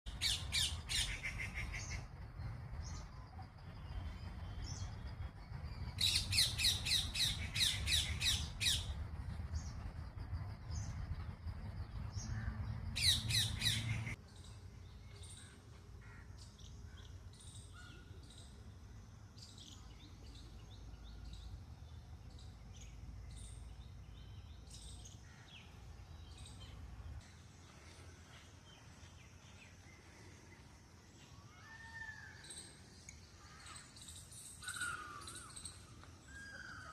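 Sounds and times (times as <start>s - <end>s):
small birds chirping: 0.1s - 36.9s
low rumble: 7.4s - 14.2s.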